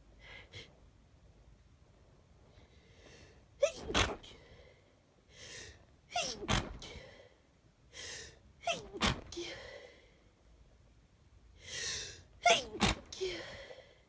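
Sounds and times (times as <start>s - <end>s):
sharp in-breath: 4.3s - 5.8s, 6.9s - 8.4s, 11.6s - 12.3s.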